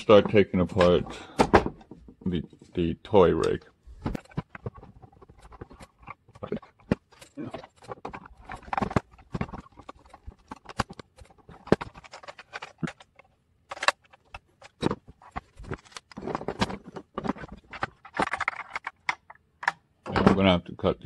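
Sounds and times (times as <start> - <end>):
toy truck parts clicking: 4.3 - 16.2, 17.2 - 19.8.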